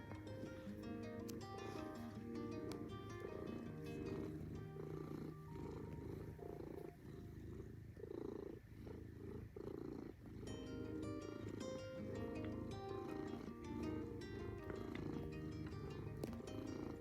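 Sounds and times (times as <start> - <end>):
light background music: 0.0 - 7.0, 10.6 - 17.0
cat purring: 0.0 - 17.0.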